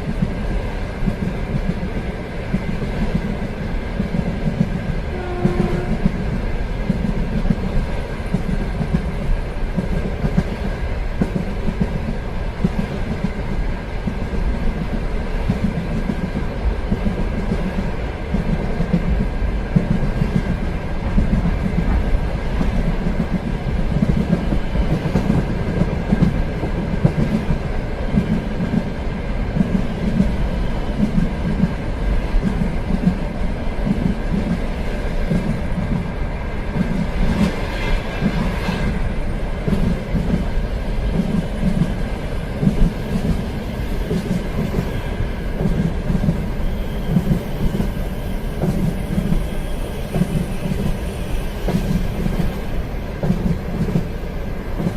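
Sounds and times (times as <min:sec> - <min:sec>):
train rumbling: 0:00.0 - 0:54.9.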